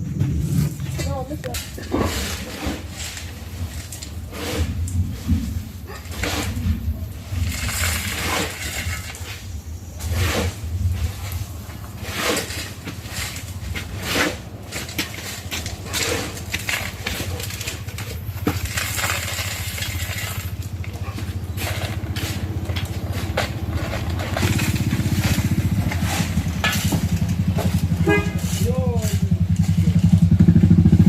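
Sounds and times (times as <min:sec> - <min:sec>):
engine running: 0:00.0 - 0:31.0.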